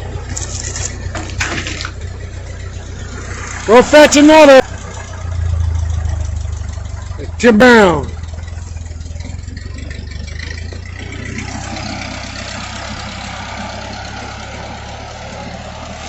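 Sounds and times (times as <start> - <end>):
tractor engine running: 0.0 - 16.0.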